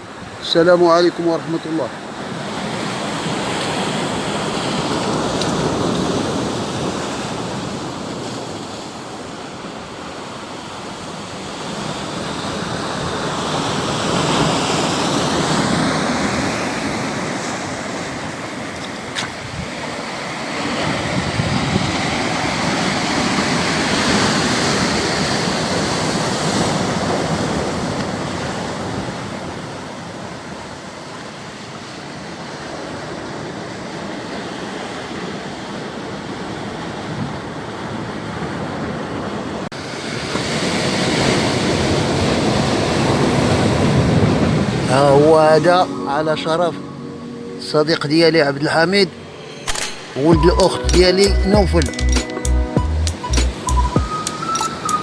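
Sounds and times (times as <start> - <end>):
sea waves breaking on shore: 0.0 - 50.4
sharp click: 49.6 - 55.0.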